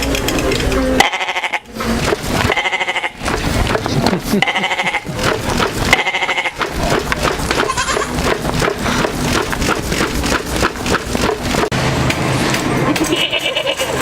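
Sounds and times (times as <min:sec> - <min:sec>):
clatter and noise: 0:00.0 - 0:14.0
goat bleating: 0:01.0 - 0:01.7, 0:02.4 - 0:03.2, 0:04.3 - 0:05.1, 0:05.8 - 0:06.6, 0:07.5 - 0:08.2, 0:12.9 - 0:14.0.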